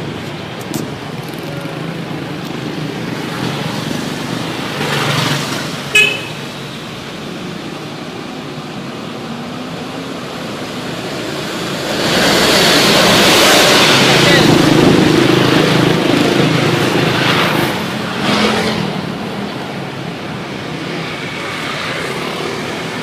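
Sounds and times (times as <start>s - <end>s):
road traffic: 0.0s - 23.0s
vehicle horn toot: 5.9s - 6.5s.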